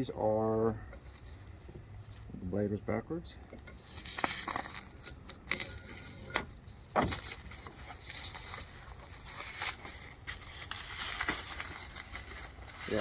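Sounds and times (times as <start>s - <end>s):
dull thump: 6.9s - 7.4s.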